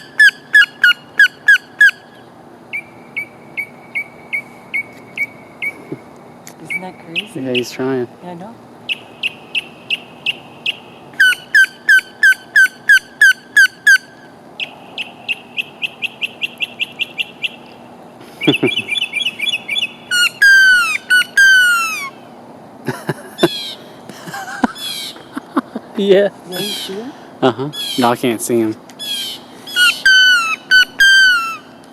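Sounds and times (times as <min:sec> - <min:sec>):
mockingbird singing: 0:00.0 - 0:22.3, 0:23.2 - 0:25.8, 0:26.5 - 0:31.9.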